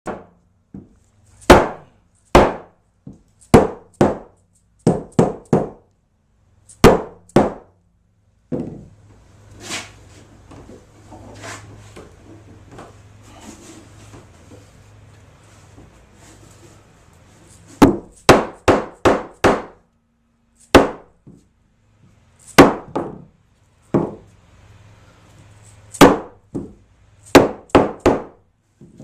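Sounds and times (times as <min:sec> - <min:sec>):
mallet knocking wooden boards: 0:01.5 - 0:05.8, 0:06.8 - 0:07.7, 0:17.8 - 0:19.8, 0:20.7 - 0:21.1, 0:22.6 - 0:23.3, 0:24.0 - 0:24.2, 0:26.0 - 0:29.0.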